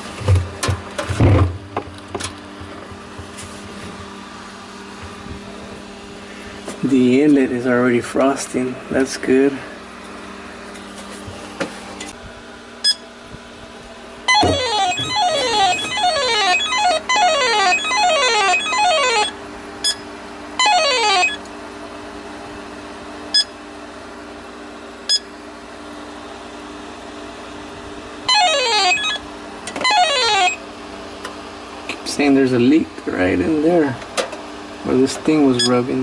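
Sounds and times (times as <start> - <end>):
electronic chirping sweeps: 14.3 - 20.0, 20.6 - 21.4, 28.3 - 29.2
short beeps: 14.3 - 21.4, 23.4 - 23.6, 28.3 - 29.2.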